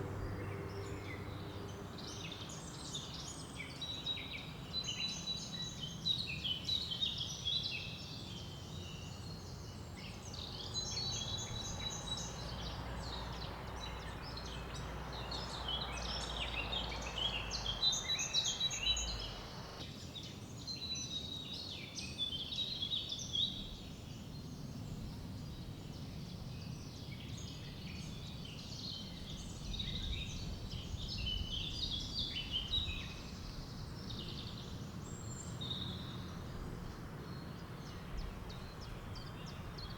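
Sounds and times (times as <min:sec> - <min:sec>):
low rumble: 0:00.0 - 0:02.1, 0:17.2 - 0:19.8
birds chirping and singing: 0:10.3 - 0:19.8.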